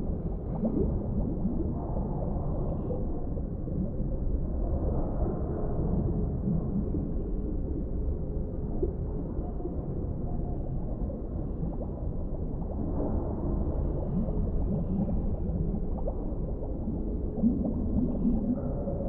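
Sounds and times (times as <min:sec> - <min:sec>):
gurgling bubbles: 0:00.0 - 0:19.0
underwater low rumble: 0:00.0 - 0:19.0.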